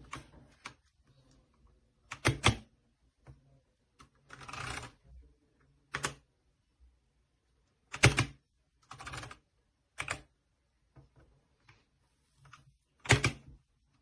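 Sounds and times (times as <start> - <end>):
mechanical keyboard typing: 2.1 - 2.7, 4.0 - 5.0, 5.9 - 6.2, 7.9 - 9.4, 10.0 - 10.3, 13.0 - 13.6.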